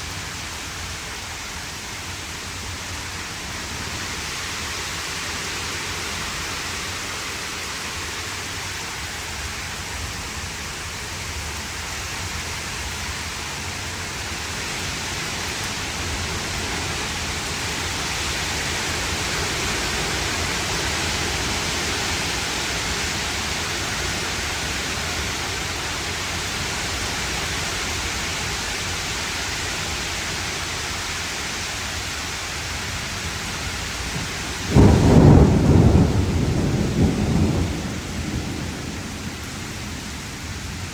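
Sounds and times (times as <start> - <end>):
heavy rain: 0.0 - 40.9
loud thunderclap: 34.1 - 40.6.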